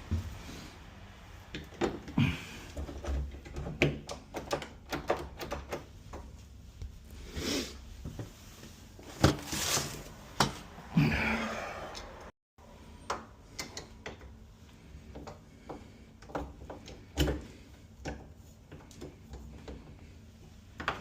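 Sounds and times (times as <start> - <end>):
scraping rustles: 6.3 - 10.7.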